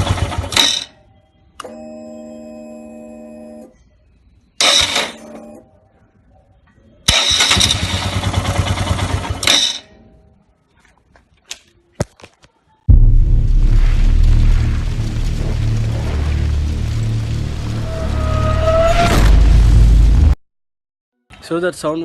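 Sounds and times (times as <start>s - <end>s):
motorcycle electric starter cranking: 7.1s - 9.8s.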